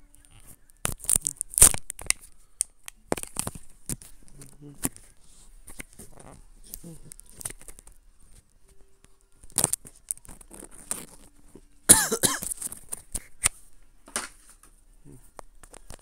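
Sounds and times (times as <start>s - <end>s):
person coughing: 11.9s - 12.6s.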